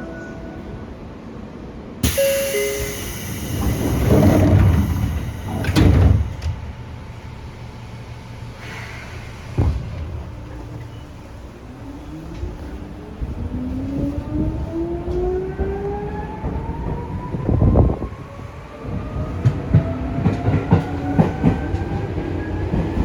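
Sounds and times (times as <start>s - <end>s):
falling two-note door chime: 2.0s - 5.6s
air hiss: 2.0s - 6.4s
train doors closing with thud: 2.0s - 13.4s, 19.3s - 23.0s.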